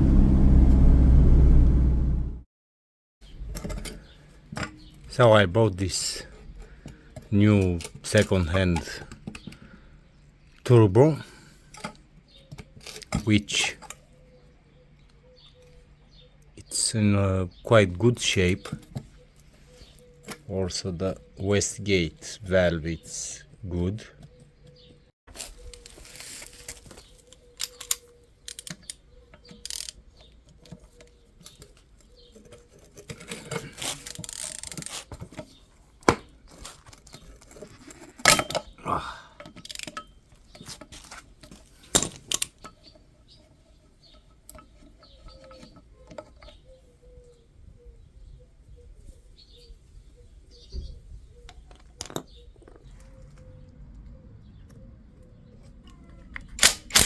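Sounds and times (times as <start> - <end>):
metal tools clinking: 25.7 - 30.0, 36.6 - 38.8.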